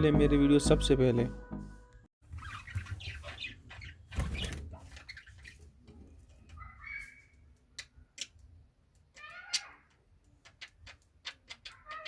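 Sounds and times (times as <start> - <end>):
budgerigars chirping: 2.4 - 5.6.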